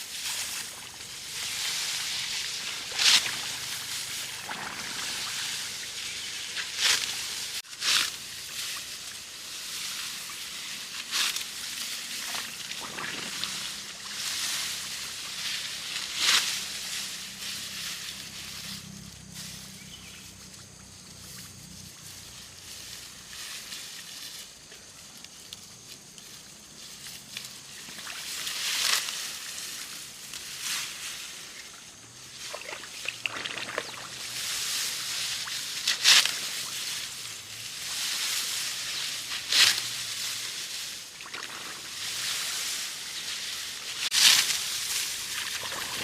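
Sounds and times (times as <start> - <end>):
steady hiss: 0.0 - 32.6, 33.9 - 46.0
water sloshing and splashing: 0.2 - 7.6, 12.2 - 14.2, 32.4 - 36.0, 41.2 - 42.3, 45.2 - 46.0.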